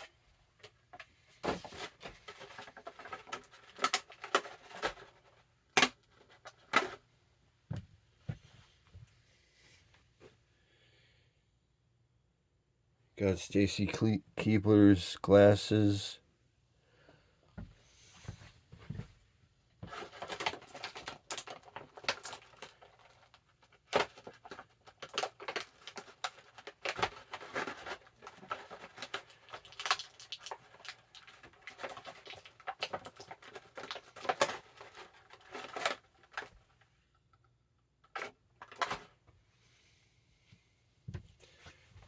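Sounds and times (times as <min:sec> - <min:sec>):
plastic packaging crinkling: 0:01.6 - 0:07.0, 0:19.9 - 0:36.8.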